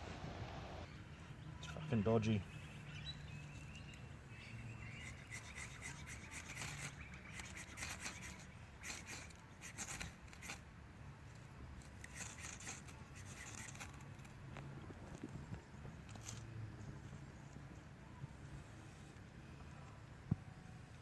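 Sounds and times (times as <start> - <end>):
rustling through dry undergrowth: 4.4 - 19.3.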